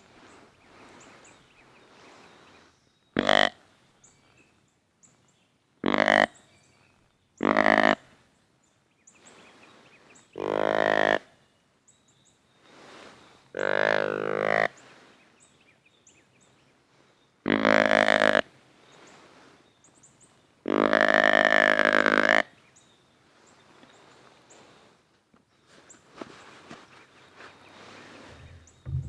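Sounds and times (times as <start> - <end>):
deer grunt call: 5.8 - 6.3, 7.4 - 8.0, 10.4 - 11.3, 13.6 - 14.7, 17.5 - 18.4, 20.7 - 22.4.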